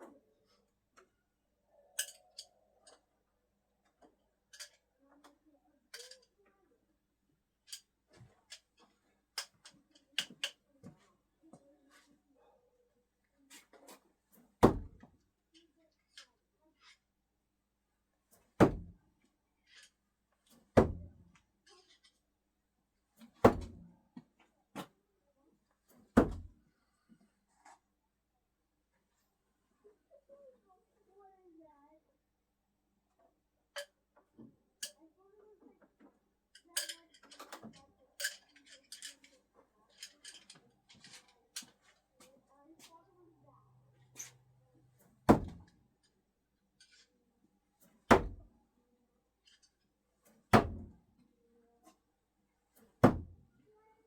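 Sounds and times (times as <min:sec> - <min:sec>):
screwdrivers clicking and knocking: 0:03.8 - 0:06.4, 0:07.7 - 0:10.7, 0:36.0 - 0:42.0
screwdrivers thunking into target: 0:14.6 - 0:15.1, 0:23.2 - 0:23.9, 0:25.9 - 0:26.5, 0:45.2 - 0:45.7, 0:47.8 - 0:48.5, 0:49.5 - 0:51.0, 0:52.8 - 0:53.4.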